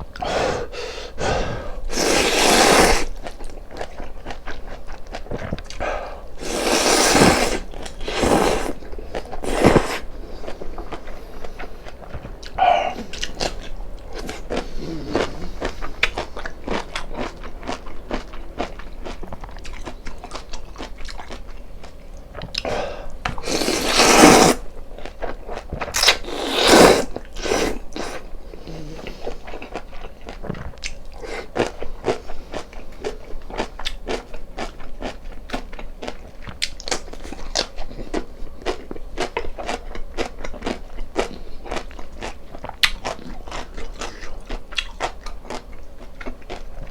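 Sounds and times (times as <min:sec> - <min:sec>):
loud slurps of soup: 0:01.4 - 0:03.2, 0:06.4 - 0:10.2, 0:23.4 - 0:24.6, 0:26.0 - 0:28.2
chewing with wet mouth clicks: 0:03.1 - 0:05.8, 0:07.6 - 0:23.7, 0:29.0 - 0:46.9.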